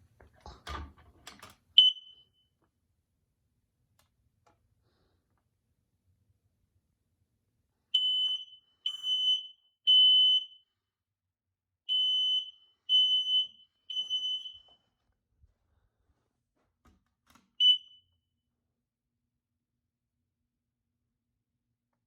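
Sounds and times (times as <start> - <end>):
smoke alarm high-pitched beeps: 1.8 - 2.5, 8.0 - 10.7, 11.9 - 14.9, 17.6 - 18.2.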